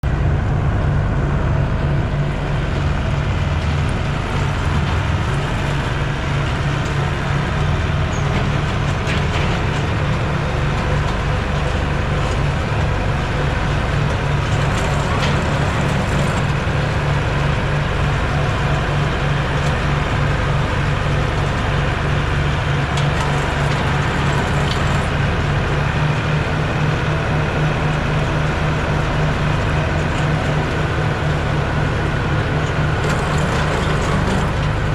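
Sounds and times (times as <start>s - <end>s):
farm machinery engine running: 0.0s - 34.9s.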